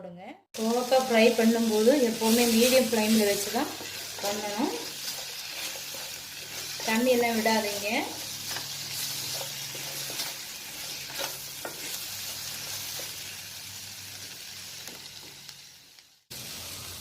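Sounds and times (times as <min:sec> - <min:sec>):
vegetables sizzling in oil: 0:00.6 - 0:17.0
spatula scraping a pan: 0:02.2 - 0:13.2.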